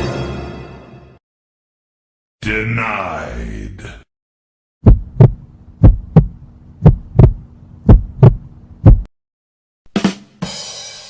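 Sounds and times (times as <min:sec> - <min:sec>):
heartbeat thumps: 0:04.8 - 0:09.1.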